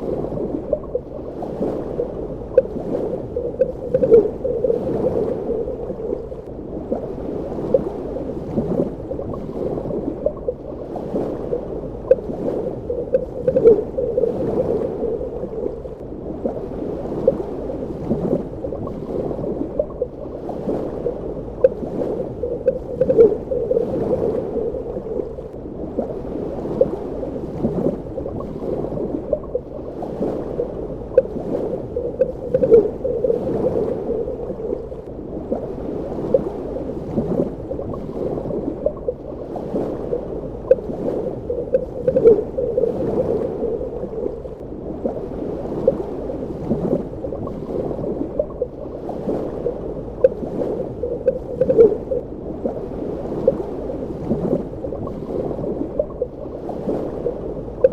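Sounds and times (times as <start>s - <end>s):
underwater gurgling: 0.0s - 57.9s.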